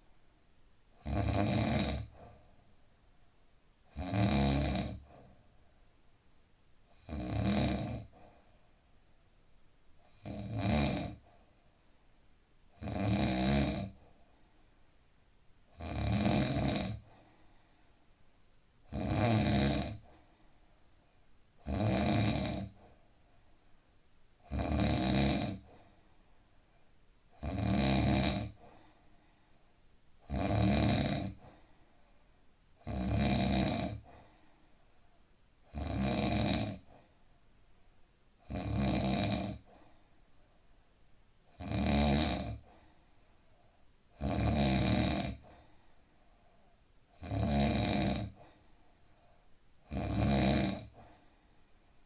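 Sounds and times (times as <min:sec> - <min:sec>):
quiet breathing: 0:00.0 - 0:52.0
man snoring: 0:01.0 - 0:02.2, 0:03.9 - 0:05.0, 0:07.0 - 0:08.1, 0:10.1 - 0:11.2, 0:12.8 - 0:14.0, 0:15.8 - 0:17.1, 0:18.9 - 0:20.1, 0:21.6 - 0:22.8, 0:24.4 - 0:25.7, 0:27.4 - 0:28.6, 0:30.3 - 0:31.5, 0:32.8 - 0:34.1, 0:35.7 - 0:36.9, 0:38.4 - 0:39.7, 0:41.6 - 0:42.7, 0:44.2 - 0:45.5, 0:47.2 - 0:48.4, 0:49.9 - 0:51.0.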